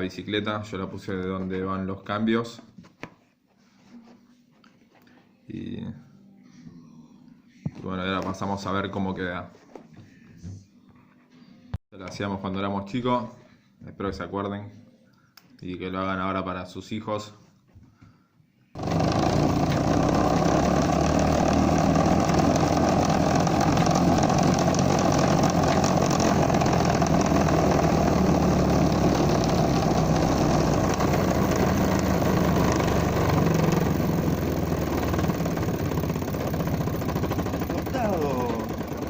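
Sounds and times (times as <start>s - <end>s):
balloon rattling in bicycle spokes: 18.8s - 39.0s.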